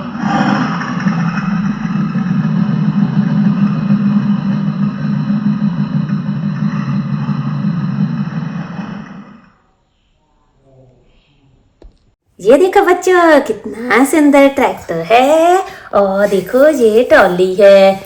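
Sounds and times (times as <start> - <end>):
engine-like rumble: 0.0 - 9.6.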